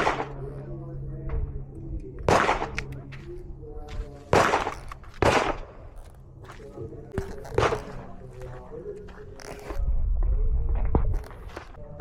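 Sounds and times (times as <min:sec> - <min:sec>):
pistol shots with echo: 0:00.0 - 0:00.5, 0:02.2 - 0:03.0, 0:04.3 - 0:05.8
faint music: 0:00.0 - 0:12.0.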